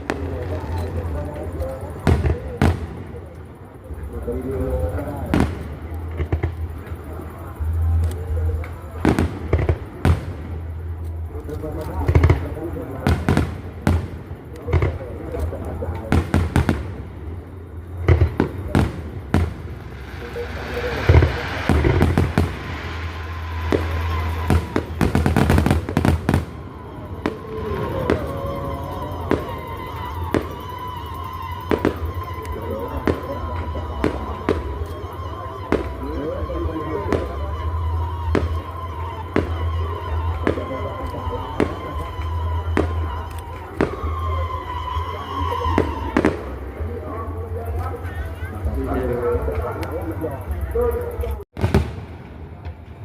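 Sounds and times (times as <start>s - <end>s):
firework bangs: 0.0s - 47.9s, 51.2s - 53.0s
hissing crackle: 0.0s - 52.9s.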